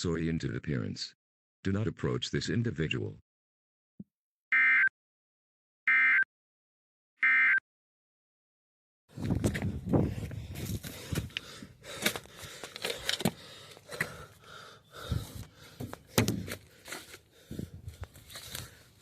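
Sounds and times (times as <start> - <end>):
irregular thumps and clicks: 11.1 - 14.2, 15.4 - 16.7.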